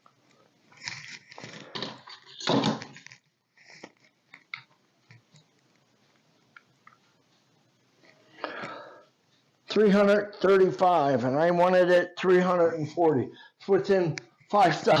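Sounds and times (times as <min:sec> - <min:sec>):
rustling and scraping of metal part: 0:00.7 - 0:04.5.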